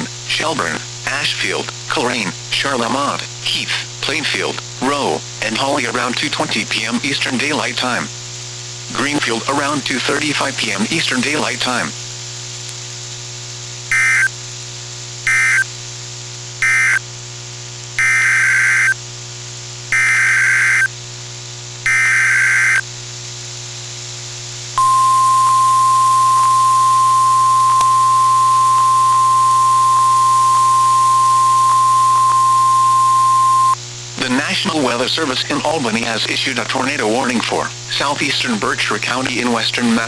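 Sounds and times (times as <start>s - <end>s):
low radio hum: 0.0s - 13.2s, 24.7s - 40.0s
steady warning alarm tone: 13.9s - 14.3s, 15.3s - 15.7s, 16.6s - 17.0s, 18.0s - 19.0s, 20.0s - 20.9s, 21.9s - 22.8s, 24.8s - 33.8s
buzzing data code bursts: 13.9s - 14.4s, 15.2s - 15.7s, 16.6s - 17.0s, 18.0s - 19.0s, 19.9s - 21.0s, 21.9s - 22.8s, 24.8s - 34.3s.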